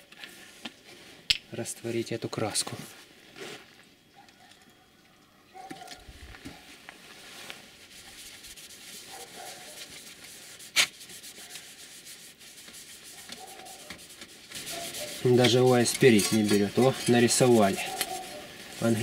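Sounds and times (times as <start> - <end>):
cotton wool rubbing on wood: 7.0 - 19.0.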